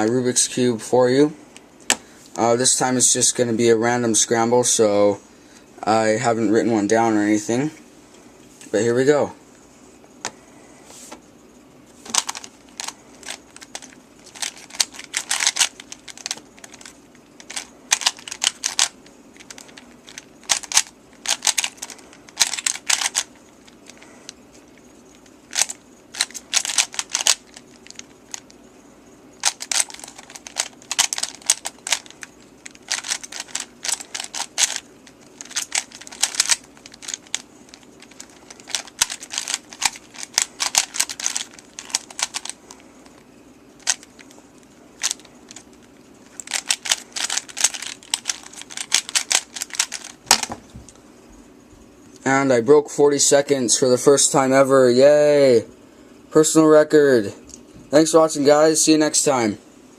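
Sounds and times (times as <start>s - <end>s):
puzzle cube clacking turns: 12.1s - 24.0s, 25.5s - 28.6s, 29.4s - 43.2s, 43.8s - 44.4s, 45.0s - 50.6s.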